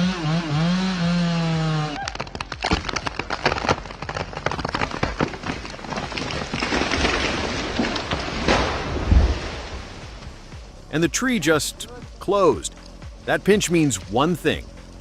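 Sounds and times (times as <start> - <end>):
branches rushing: 1.9 - 10.8
wood cracking and snapping: 2.0 - 9.8
tree crashing down: 2.0 - 10.4.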